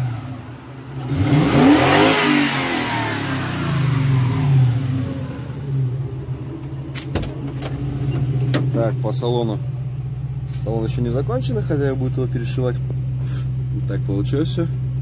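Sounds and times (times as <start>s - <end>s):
car engine revving from idle: 0.0s - 6.9s.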